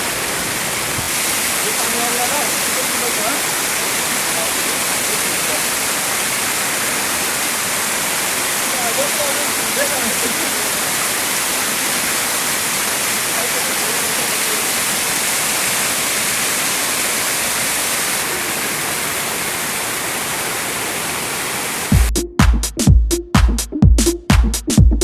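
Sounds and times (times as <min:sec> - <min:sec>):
waterfall rushing: 0:00.0 - 0:22.1
dance music with heavy beat: 0:21.9 - 0:25.0.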